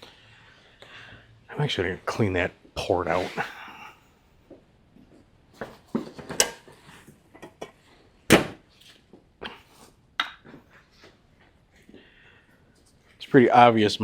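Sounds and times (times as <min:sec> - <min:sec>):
hand tools clicking and knocking on metal: 0:06.2 - 0:06.7.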